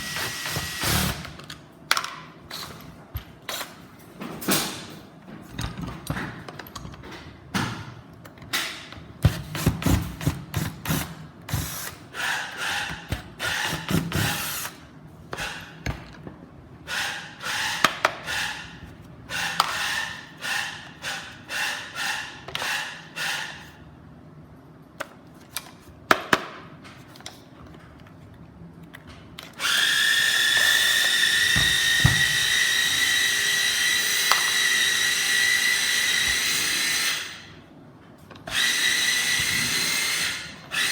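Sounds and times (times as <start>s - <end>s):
power tool motor whirring: 38.5s - 40.9s.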